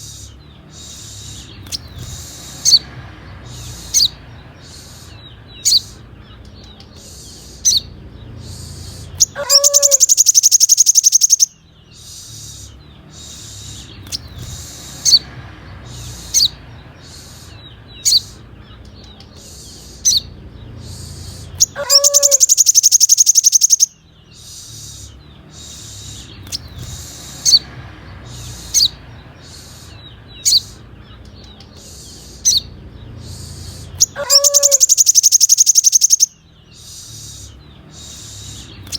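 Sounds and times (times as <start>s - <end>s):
rapid high bird trill: 0.0s - 6.1s, 6.9s - 18.6s, 19.4s - 30.9s, 31.7s - 38.9s
bird chirps: 0.0s - 38.9s.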